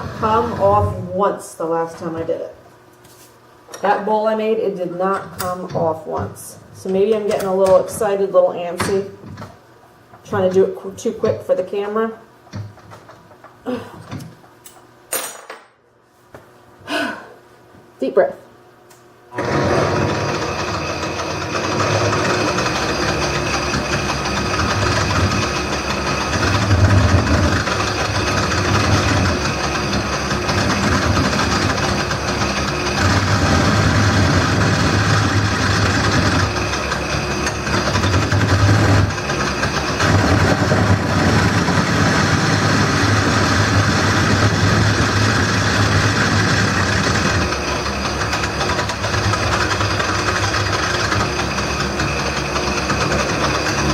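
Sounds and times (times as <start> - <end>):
lathe motor hum: 19.3 - 53.9
gouge shaving wood: 19.4 - 53.9.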